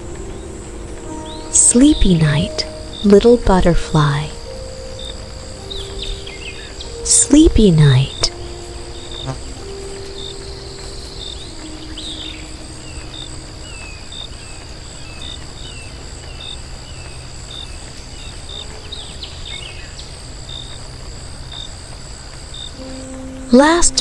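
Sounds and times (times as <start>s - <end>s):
high insect trill: 0.0s - 24.0s
pulsing insect call: 0.0s - 24.0s.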